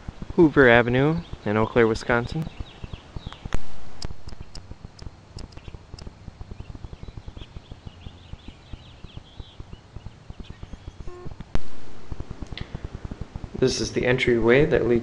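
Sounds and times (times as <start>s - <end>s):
high chirps: 7.1s - 12.8s.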